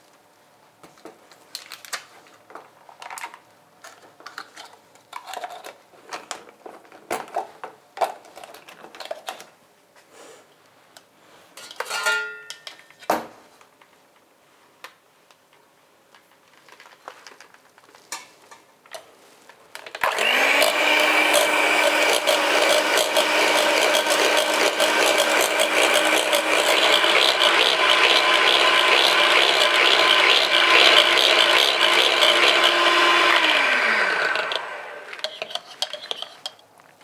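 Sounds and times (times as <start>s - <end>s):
electric kitchen mixer running: 20.0s - 35.3s.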